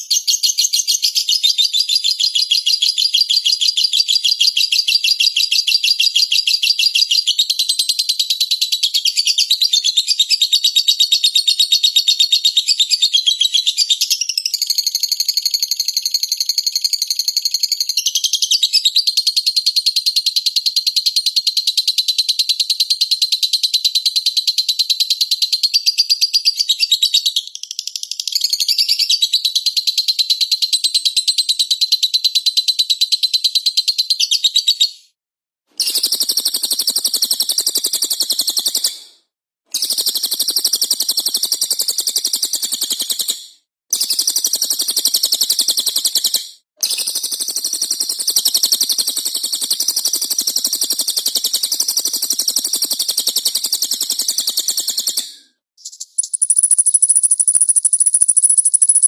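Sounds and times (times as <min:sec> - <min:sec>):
cage bird twittering: 0:54.7 - 0:59.0.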